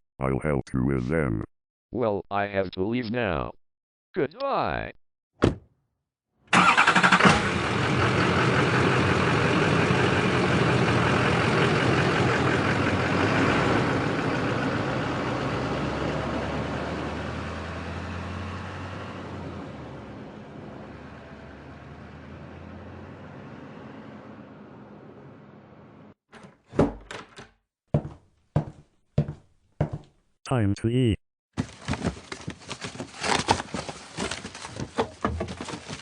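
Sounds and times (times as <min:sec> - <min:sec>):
truck engine starting and running: 0:06.4 - 0:26.2.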